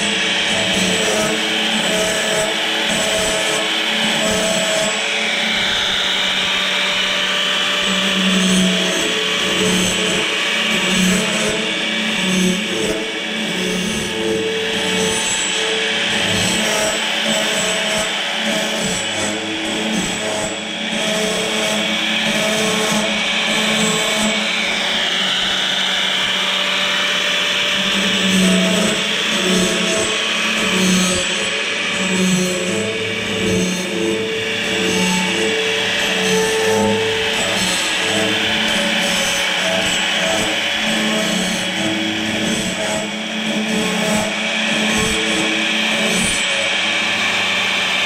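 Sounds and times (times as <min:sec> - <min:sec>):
blade grinding: 0:00.0 - 0:48.0
motor humming: 0:18.4 - 0:48.0.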